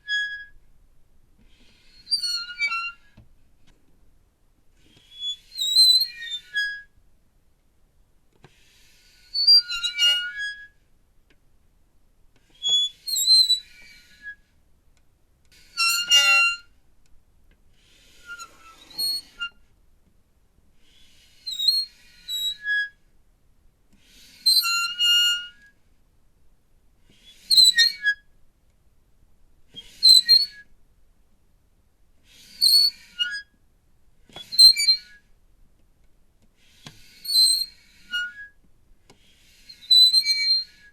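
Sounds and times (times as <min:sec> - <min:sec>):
squeaky metal hinge squealing: 0:00.1 - 0:00.6, 0:01.8 - 0:03.2, 0:05.0 - 0:06.9, 0:09.4 - 0:10.7, 0:12.6 - 0:14.4, 0:15.8 - 0:16.6, 0:18.3 - 0:19.6, 0:32.6 - 0:33.4, 0:34.5 - 0:35.2, 0:37.1 - 0:38.5, 0:39.7 - 0:40.9.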